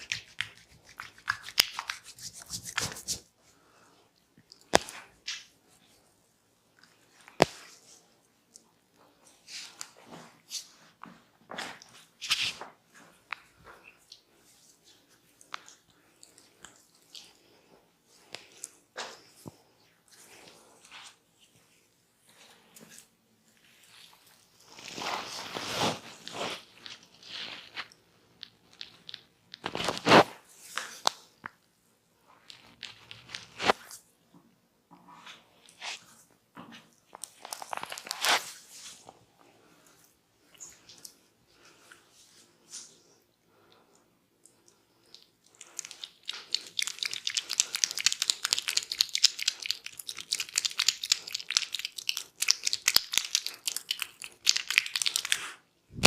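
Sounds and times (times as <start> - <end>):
hands rubbing and scratching: 0.0 - 3.4, 11.6 - 31.2, 32.4 - 34.0, 37.1 - 39.1, 45.5 - 56.0.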